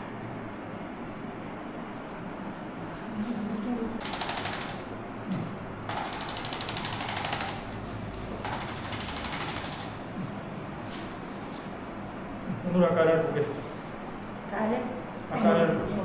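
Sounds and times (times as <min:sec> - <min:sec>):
rapid mechanical tapping: 0:04.0 - 0:05.0, 0:05.9 - 0:10.2.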